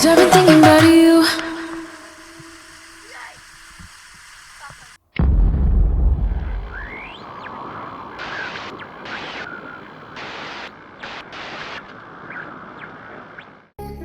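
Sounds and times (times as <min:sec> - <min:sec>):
brief hissing bursts: 0:00.7 - 0:05.0
steady rushing noise: 0:05.6 - 0:13.4
small birds chirping: 0:06.7 - 0:13.7.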